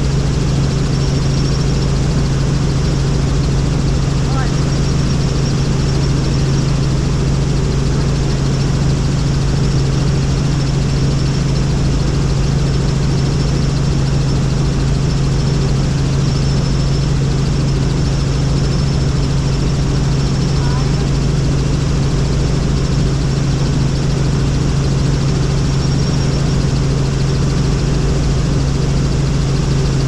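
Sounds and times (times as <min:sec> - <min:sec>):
faint high whine: 0:00.0 - 0:30.0
helicopter engine and rotor drone: 0:00.0 - 0:30.0.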